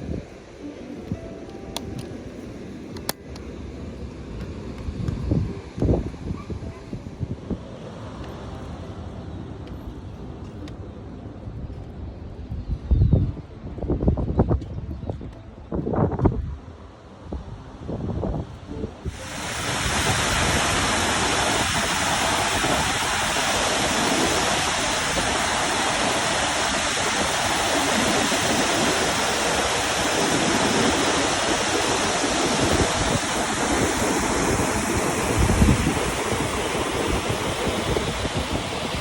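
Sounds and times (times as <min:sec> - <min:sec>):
water rushing over spillway: 0:19.0 - 0:39.0.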